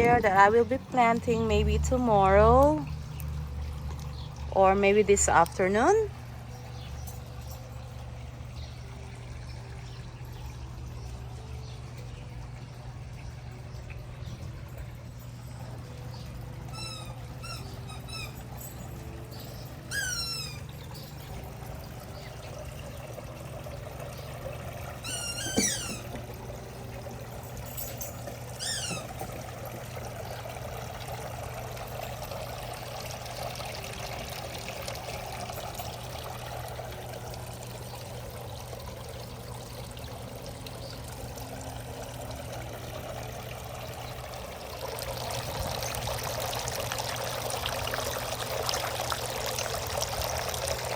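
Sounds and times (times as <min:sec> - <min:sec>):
water trickling: 0:00.0 - 0:50.9
small birds chirping: 0:02.5 - 0:23.0, 0:24.0 - 0:26.2, 0:27.8 - 0:29.2.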